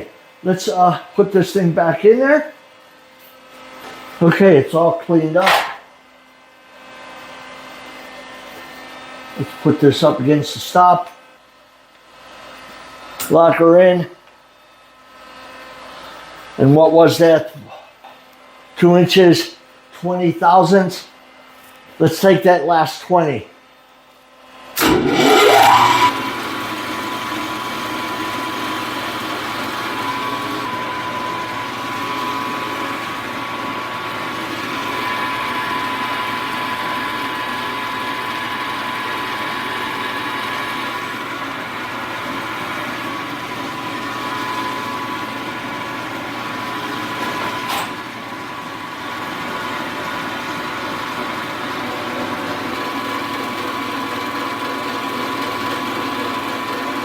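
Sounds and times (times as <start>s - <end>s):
milling machine whining: 24.8s - 57.0s.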